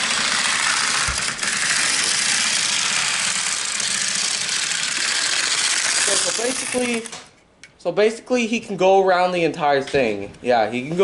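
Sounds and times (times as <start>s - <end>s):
model locomotive rattling whir: 0.0s - 7.0s.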